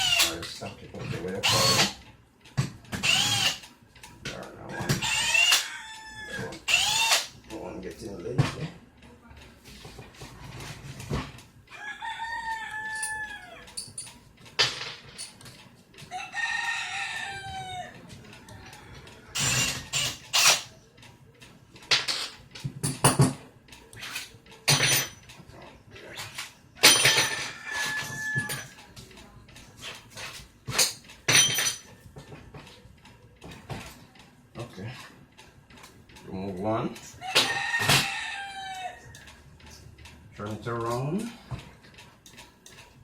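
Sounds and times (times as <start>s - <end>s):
rooster crowing: 4.6s - 6.6s, 11.7s - 13.7s, 16.1s - 19.6s, 27.0s - 28.8s, 37.2s - 39.4s
metallic clicks and clatters: 12.9s - 16.1s, 39.1s - 43.0s.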